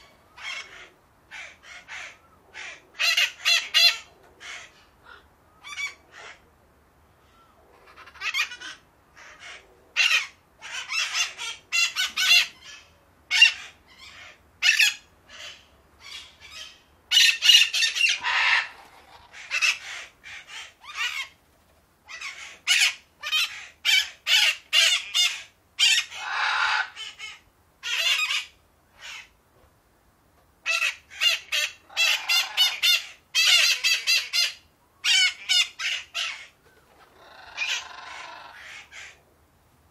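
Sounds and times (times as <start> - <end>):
parakeets squawking: 7.9 - 21.3, 30.7 - 36.5, 37.2 - 39.2.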